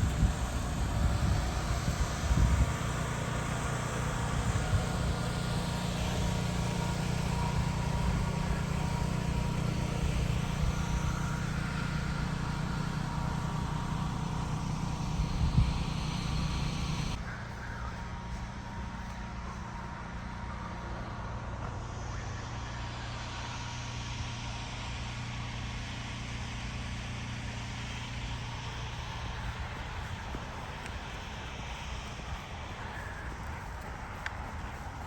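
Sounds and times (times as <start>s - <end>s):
quiet thin hum: 0.0s - 20.8s
car engine and road noise: 0.0s - 35.0s.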